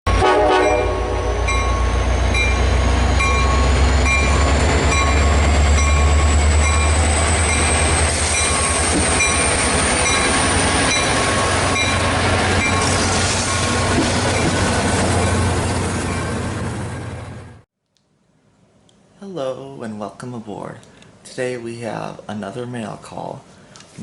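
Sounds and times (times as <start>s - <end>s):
train rumbling on rails: 0.1s - 17.7s.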